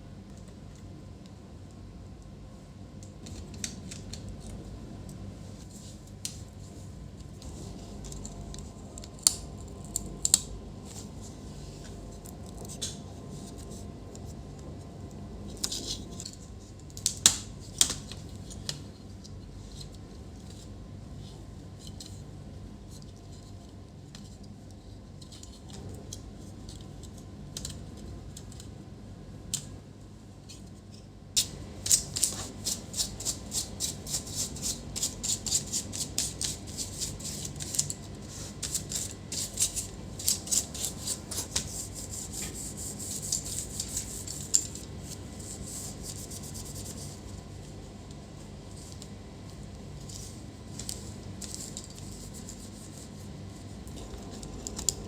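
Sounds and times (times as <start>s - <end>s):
scraping and rubbing strokes: 31.4s - 47.3s.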